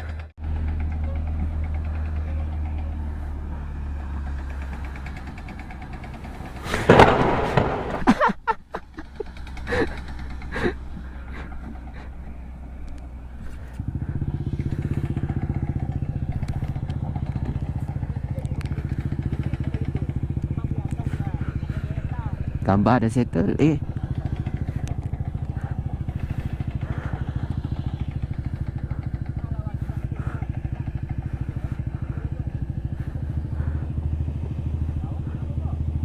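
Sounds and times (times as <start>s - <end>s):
motorcycle engine idling: 0.0s - 36.0s
clattering knocks: 6.7s - 8.3s.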